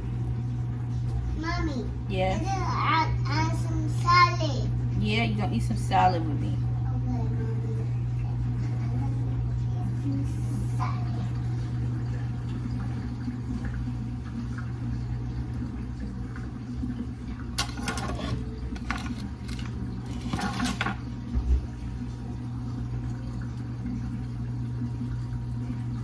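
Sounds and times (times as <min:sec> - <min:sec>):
steady low hum: 0:00.0 - 0:26.0
kitchenware clattering: 0:17.6 - 0:21.1.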